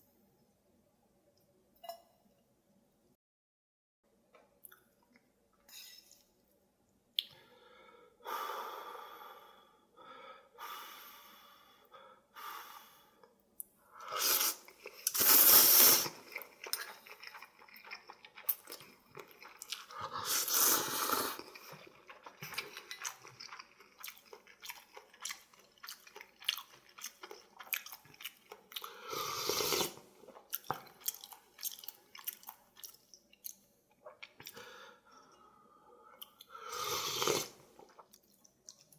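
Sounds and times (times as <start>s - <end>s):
person slurping noodles: 14.0s - 17.8s, 18.5s - 23.6s, 28.8s - 30.1s, 36.5s - 37.7s
wet chewing with clicks: 16.2s - 20.1s, 21.4s - 28.9s, 30.3s - 34.6s.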